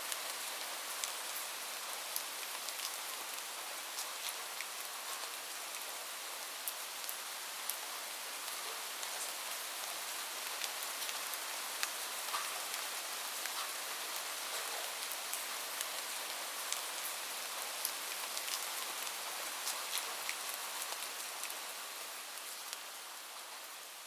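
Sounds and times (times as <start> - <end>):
light rain falling: 0.0 - 24.0.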